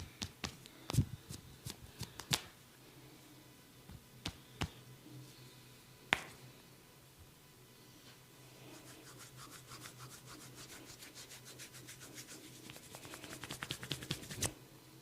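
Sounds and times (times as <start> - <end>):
hands rubbing scalp and hair: 8.7 - 14.6.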